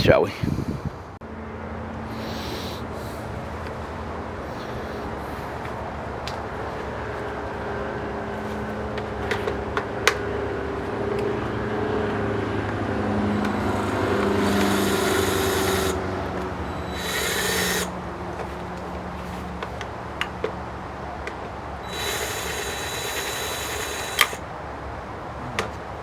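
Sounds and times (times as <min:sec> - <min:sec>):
steady low hum: 0:00.5 - 0:26.0
power tool whirring: 0:13.2 - 0:18.9, 0:21.8 - 0:24.4
sharp tool clicks: 0:13.4 - 0:17.9, 0:21.8 - 0:24.4.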